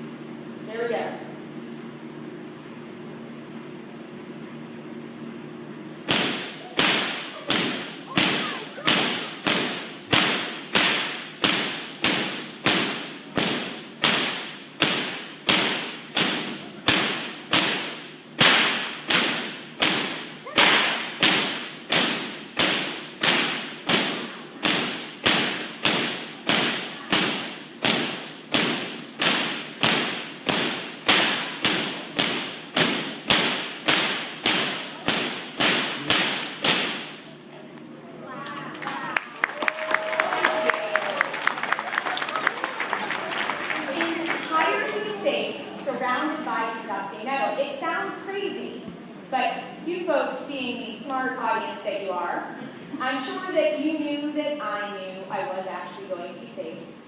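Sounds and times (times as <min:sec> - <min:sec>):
sharp electric cracks: 0:06.0 - 0:37.3.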